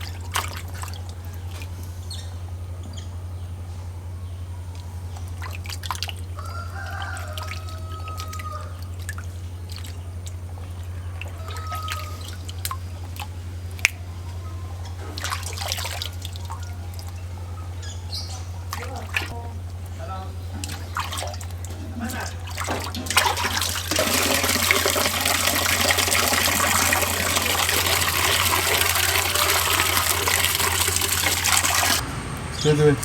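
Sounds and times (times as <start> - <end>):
water splashing and dripping: 0.0 - 1.8, 4.8 - 6.4, 7.0 - 14.0, 15.1 - 17.3, 18.7 - 19.4, 20.6 - 32.0.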